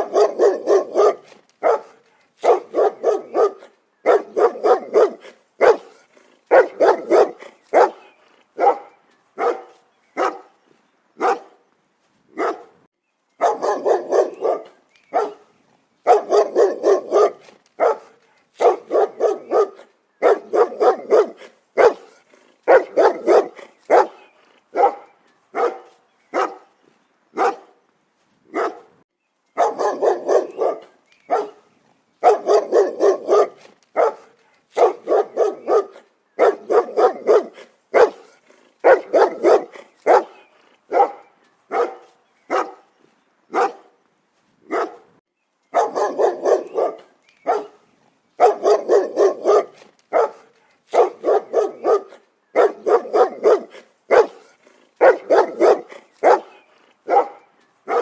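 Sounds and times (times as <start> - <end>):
dog barking loudly: 0.0 - 10.6, 11.2 - 11.6, 12.4 - 12.8, 13.4 - 26.7, 27.4 - 27.8, 28.5 - 29.0, 29.6 - 42.9, 43.5 - 44.0, 44.7 - 58.0.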